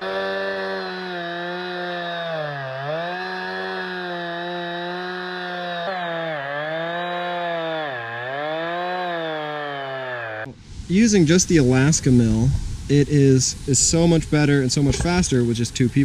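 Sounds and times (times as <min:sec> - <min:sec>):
chainsaw cutting through log: 0:00.0 - 0:10.5.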